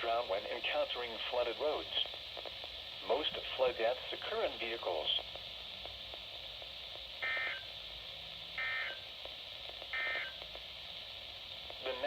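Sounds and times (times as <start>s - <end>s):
digital data tone bursts: 7.2s - 7.7s.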